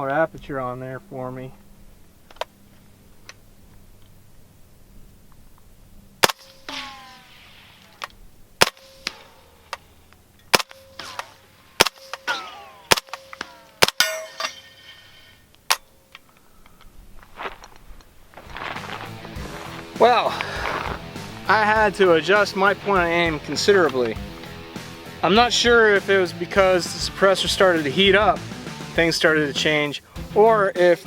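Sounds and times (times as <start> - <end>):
suppressed gunshots: 6.2 - 14.1
metallic ringing: 10.6 - 16.1.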